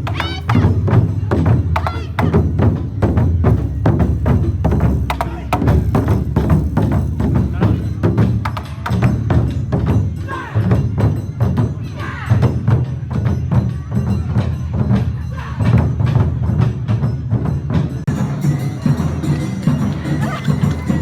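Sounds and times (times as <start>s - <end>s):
festival band playing dance rhythm: 0.0s - 21.0s
taiko drums beating: 0.0s - 21.0s
hand gong clanging: 18.1s - 21.0s.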